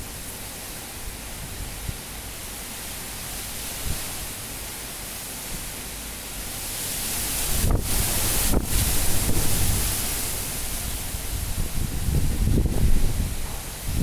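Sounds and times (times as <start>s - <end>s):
low thumps of wind buffeting: 0.0s - 2.6s, 6.4s - 14.0s
strong wind rushing: 10.8s - 14.0s.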